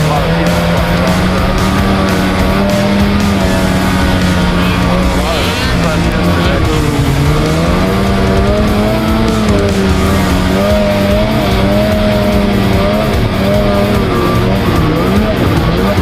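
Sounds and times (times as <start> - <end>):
snowmobile engine revving: 0.0 - 16.0.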